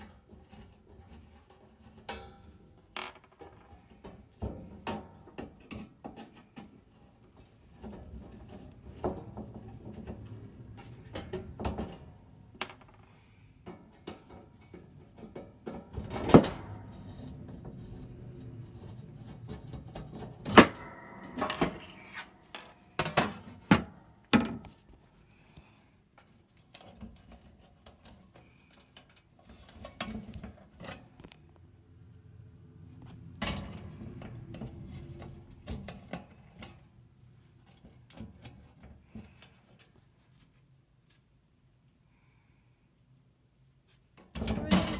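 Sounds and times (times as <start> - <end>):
hard objects clattering: 8.2 - 13.4, 15.4 - 23.9.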